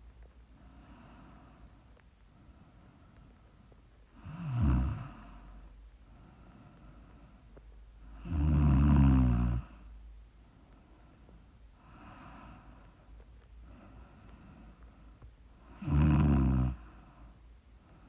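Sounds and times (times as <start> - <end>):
woman snoring: 4.2 - 5.4, 8.2 - 9.7, 15.7 - 16.9
faint breath: 5.1 - 7.7, 9.7 - 15.3.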